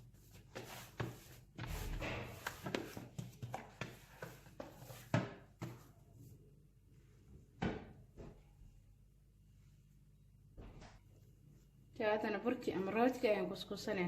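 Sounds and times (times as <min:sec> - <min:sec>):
dough being kneaded by hand: 0:00.0 - 0:06.9.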